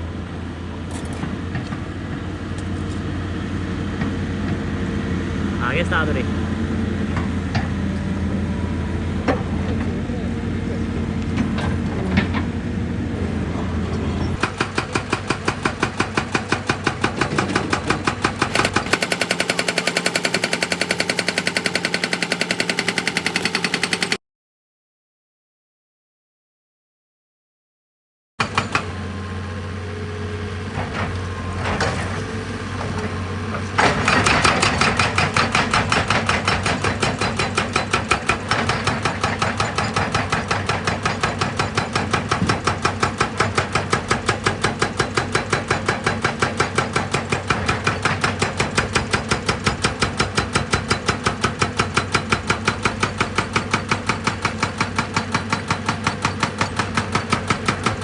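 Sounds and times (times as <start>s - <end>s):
heavy diesel engine running: 0.0s - 24.2s.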